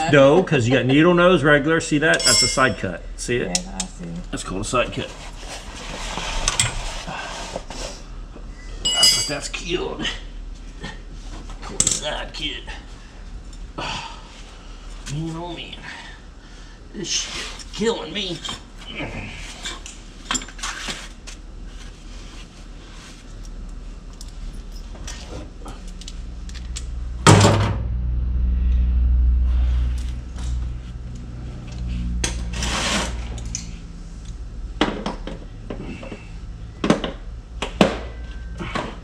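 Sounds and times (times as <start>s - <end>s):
metal hand tools clinking: 2.1s - 2.9s, 8.9s - 9.4s
low rumble: 25.6s - 34.8s
loud metal clank: 27.2s - 28.0s.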